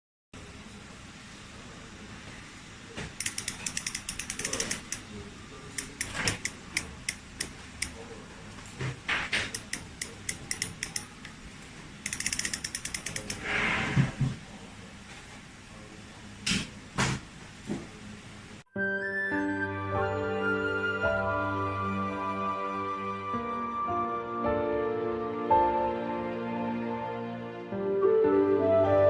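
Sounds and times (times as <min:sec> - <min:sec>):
bicycle hub ratchet clicks: 0:03.2 - 0:05.1, 0:05.8 - 0:08.0, 0:09.5 - 0:11.3, 0:12.0 - 0:13.5.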